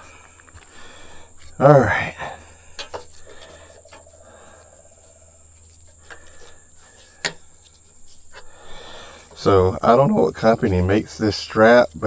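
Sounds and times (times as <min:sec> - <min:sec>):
crickets chirping: 0:00.0 - 0:12.0
light clicks and knocks: 0:02.7 - 0:04.2, 0:05.6 - 0:08.5.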